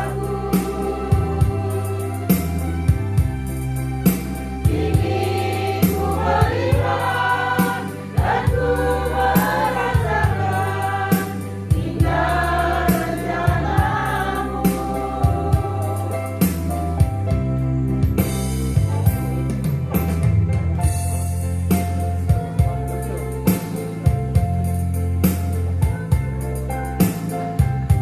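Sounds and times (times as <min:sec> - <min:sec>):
congregation singing a praise song: 0:00.0 - 0:03.2, 0:04.0 - 0:17.2
bass line and beat accompaniment: 0:00.0 - 0:28.0.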